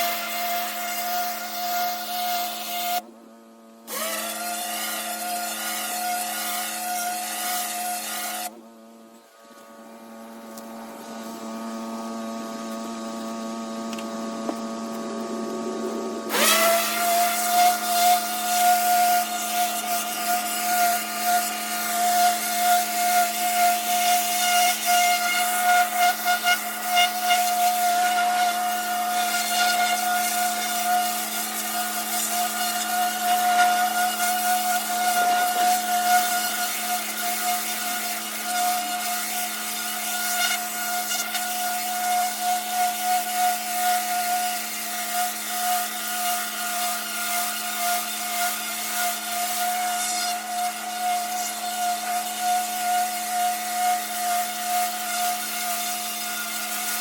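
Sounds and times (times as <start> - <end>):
pressure washer machine running: 0.0 - 3.0, 3.7 - 8.5, 9.2 - 57.0.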